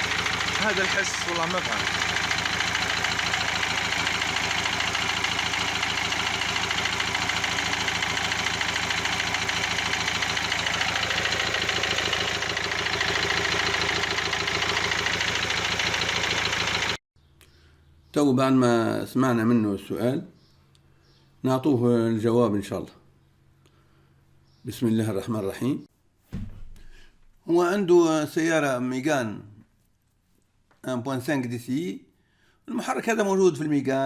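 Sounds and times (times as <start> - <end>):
diesel engine idling with ticking knock: 0.0 - 17.0.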